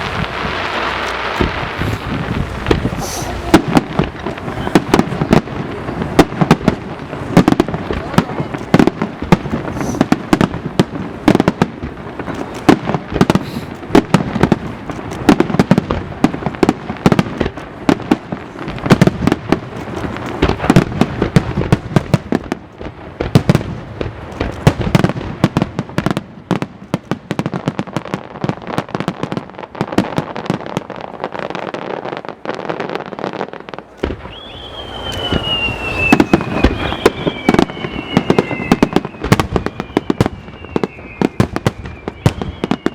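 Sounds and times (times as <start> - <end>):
descending firework whistles: 0.0 - 5.4, 9.5 - 10.6, 13.2 - 13.8, 34.0 - 42.9
fireworks bursts and bangs: 0.0 - 42.9.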